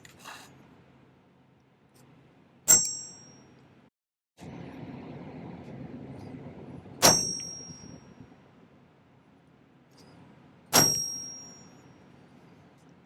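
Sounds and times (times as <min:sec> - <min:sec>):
hammer striking metal stamp: 0:07.0 - 0:08.0, 0:10.7 - 0:11.7.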